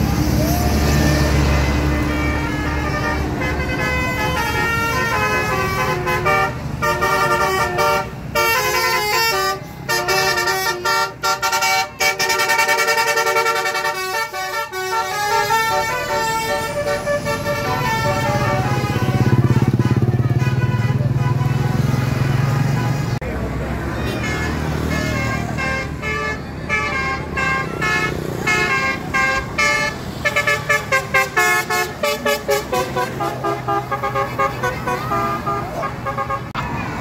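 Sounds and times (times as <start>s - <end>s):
bus engine running: 0.0s - 37.0s
musical bus air horn: 0.1s - 23.2s, 24.0s - 36.6s.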